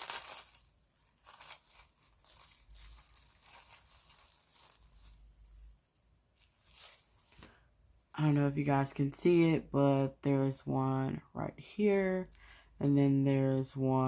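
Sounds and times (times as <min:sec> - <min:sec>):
plastic container crinkling: 0:00.0 - 0:07.5.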